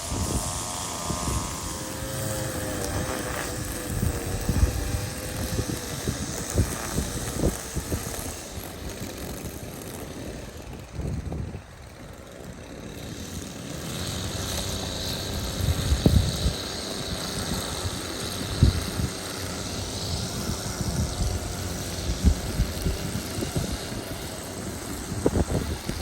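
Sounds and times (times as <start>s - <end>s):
engine humming: 0.0s - 26.0s.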